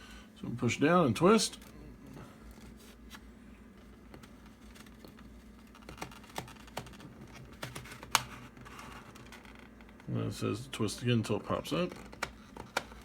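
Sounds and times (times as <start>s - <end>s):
plastic clicking and rubbing: 4.0s - 10.1s, 11.7s - 13.0s.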